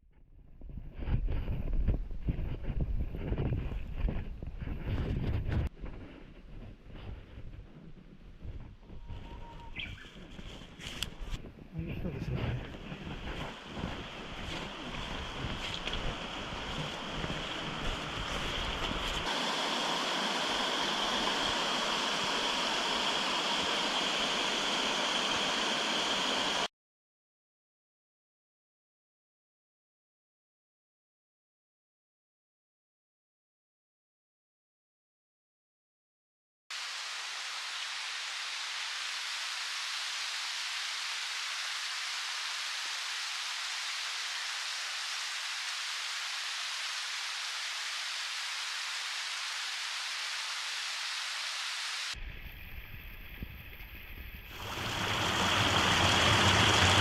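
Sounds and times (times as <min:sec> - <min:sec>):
wind rumble on microphone: 0:00.1 - 0:19.3
waterfall rushing: 0:13.4 - 0:26.7, 0:36.8 - 0:52.2, 0:54.5 - 0:57.0.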